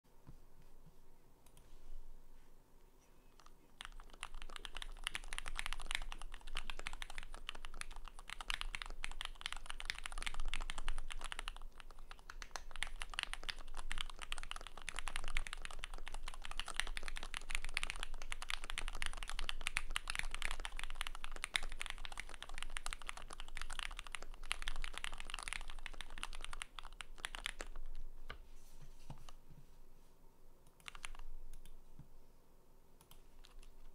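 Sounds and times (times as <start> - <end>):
mechanical keyboard typing: 3.4 - 28.0, 30.8 - 31.7, 33.0 - 33.9.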